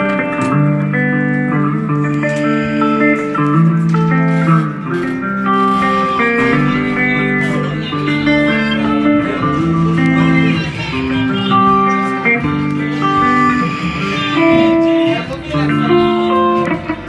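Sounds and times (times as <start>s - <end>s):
electric guitar melody: 0.0s - 17.0s.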